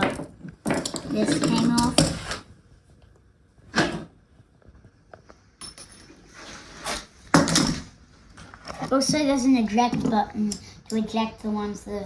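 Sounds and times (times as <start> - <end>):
short scrape: 6.3 - 7.2.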